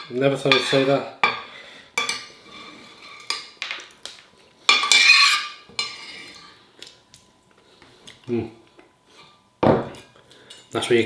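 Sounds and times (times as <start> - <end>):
cutlery scraping a plate: 0.0 - 3.6, 4.7 - 6.6.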